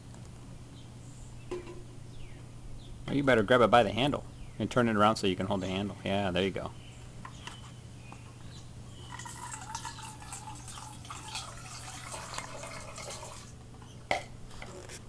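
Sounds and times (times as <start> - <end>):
steady low hum: 0.0 - 15.0
water pouring into a bowl: 9.1 - 13.6.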